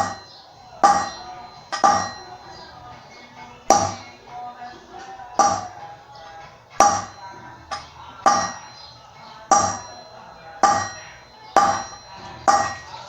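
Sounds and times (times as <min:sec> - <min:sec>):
hammer blows on metal: 0:00.0 - 0:02.8, 0:03.6 - 0:04.2, 0:05.4 - 0:06.0, 0:06.7 - 0:13.0.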